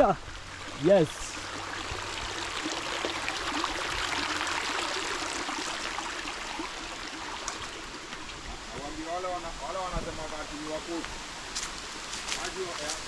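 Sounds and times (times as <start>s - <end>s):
stream water rushing: 0.0s - 13.0s.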